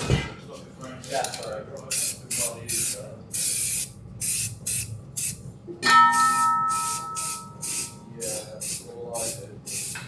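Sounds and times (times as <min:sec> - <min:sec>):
metallic clang ringing: 0:05.8 - 0:07.7
spray paint can hissing: 0:06.8 - 0:10.0.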